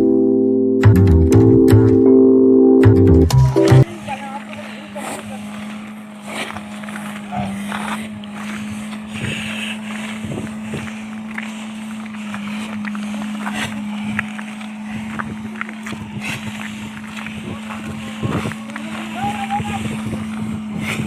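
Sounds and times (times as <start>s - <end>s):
car engine droning: 0.0s - 21.0s
knocks and clicks from bumpy road: 4.5s - 21.0s.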